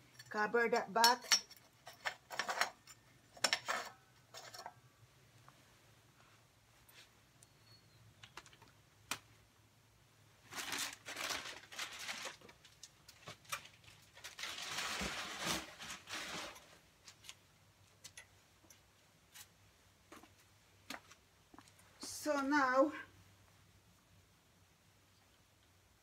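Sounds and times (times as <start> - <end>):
rustling and scraping: 1.4 - 7.3, 10.4 - 22.0.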